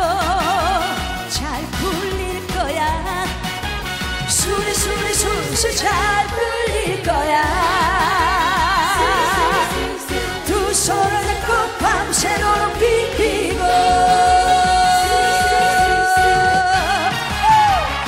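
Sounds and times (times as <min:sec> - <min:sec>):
band accompaniment: 0:00.0 - 0:18.0
person singing with vibrato: 0:04.4 - 0:17.4.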